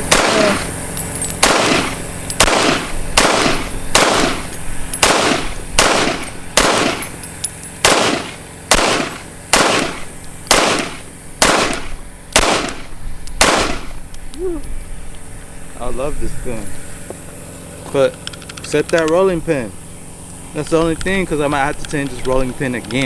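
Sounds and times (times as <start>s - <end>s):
pistol shots: 0.0s - 0.7s, 1.4s - 7.2s, 7.8s - 14.0s.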